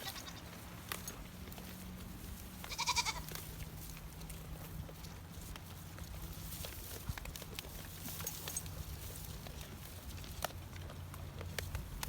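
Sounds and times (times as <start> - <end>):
goat or sheep bleat: 0.0 - 0.6, 2.6 - 3.4.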